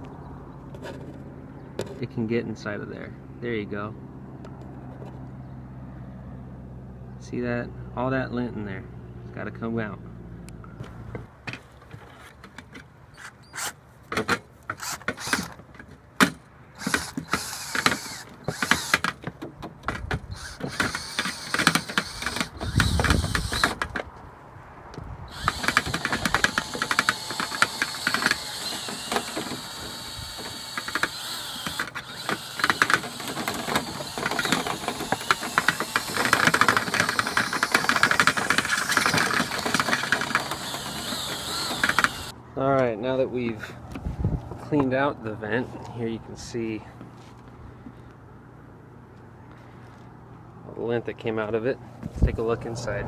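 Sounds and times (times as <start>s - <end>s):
power tool running with rattle: 16.8s - 19.1s, 20.3s - 23.8s, 25.3s - 42.3s.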